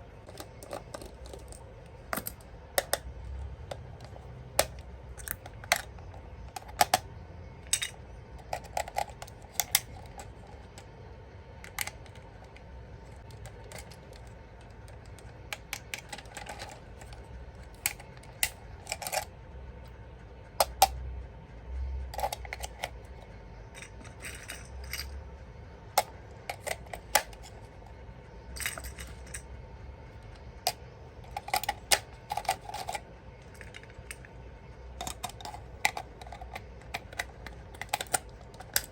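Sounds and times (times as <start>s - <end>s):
plastic toy parts clicking: 0.2s - 7.0s, 7.6s - 10.8s, 35.0s - 38.9s.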